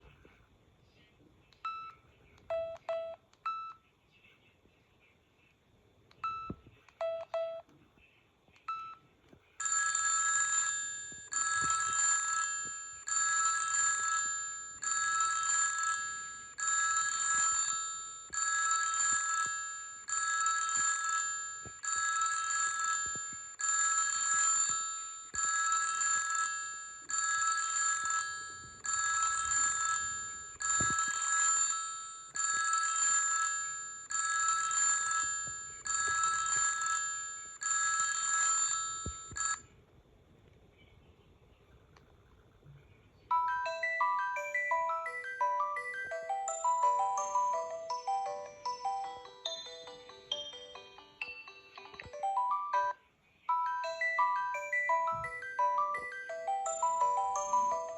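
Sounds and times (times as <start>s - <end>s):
bell-like phone ringtone: 9.6s - 39.7s, 43.3s - 57.9s.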